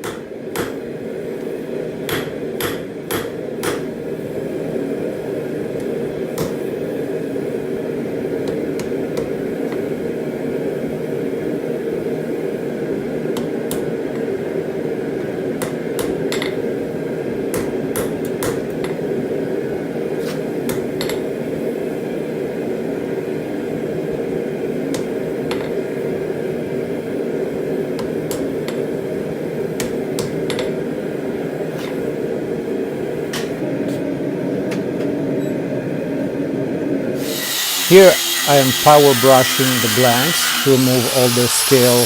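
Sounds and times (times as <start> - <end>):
low hum of shop equipment: 0.0 - 42.0
hammer striking steel: 2.1 - 3.9.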